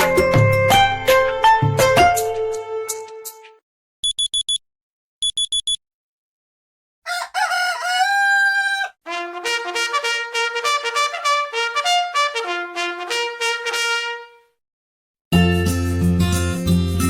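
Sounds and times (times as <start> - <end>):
recorded rooster crow: 7.0 - 9.1
trumpet melody: 9.1 - 14.6.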